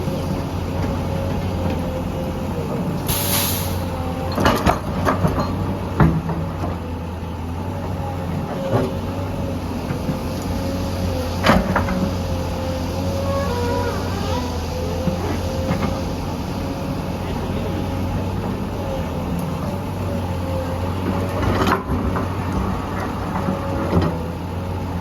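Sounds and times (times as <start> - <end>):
diesel engine drone: 0.0 - 25.0
short hiss: 3.1 - 3.9.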